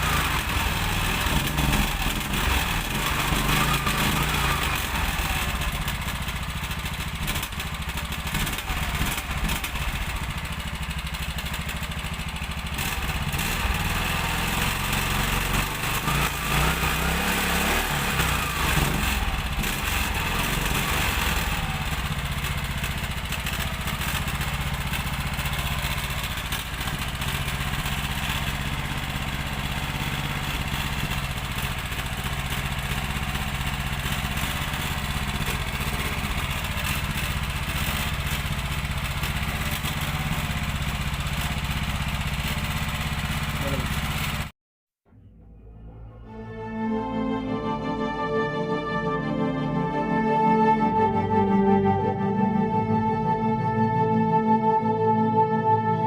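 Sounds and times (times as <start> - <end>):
small engine running: 0.0 - 44.5.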